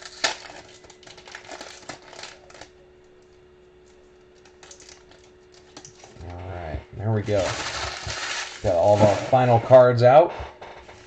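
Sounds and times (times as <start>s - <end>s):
cards and wrapping crinkling: 0.0s - 2.8s, 3.9s - 6.4s, 7.2s - 9.8s
low steady hum: 0.0s - 11.0s.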